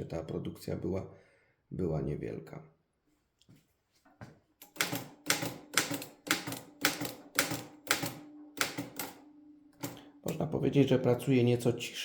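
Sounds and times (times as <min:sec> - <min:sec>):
typewriter key strikes: 0:04.6 - 0:09.2.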